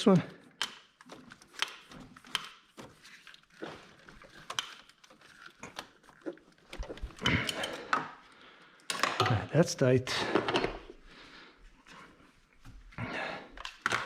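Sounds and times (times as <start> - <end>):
tools clicking and knocking: 0.4 - 8.2, 8.8 - 9.5.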